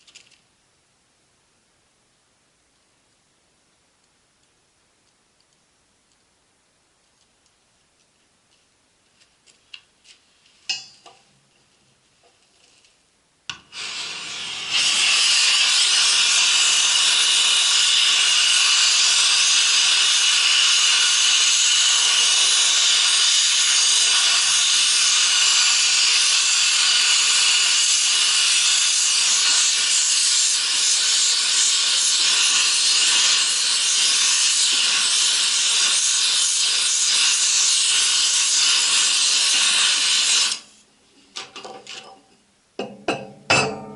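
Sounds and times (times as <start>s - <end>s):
torch flame hissing: 13.5s - 40.9s
gas hissing: 13.5s - 41.6s.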